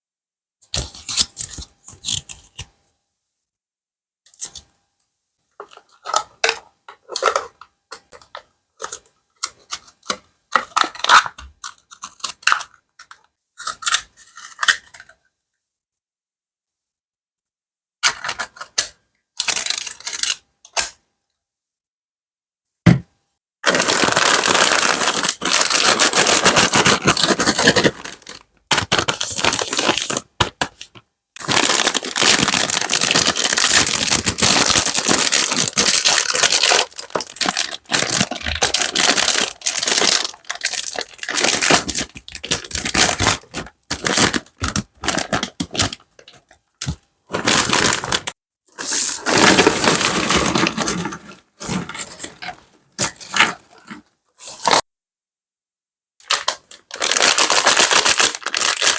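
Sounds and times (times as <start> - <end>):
sweet wrappers crinkling: 23.6 - 46.0, 46.8 - 51.0, 56.2 - 58.9.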